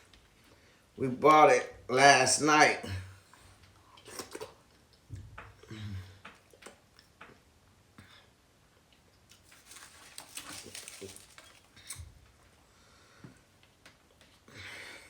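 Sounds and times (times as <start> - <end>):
wet chewing and lip smacks: 6.2 - 7.4.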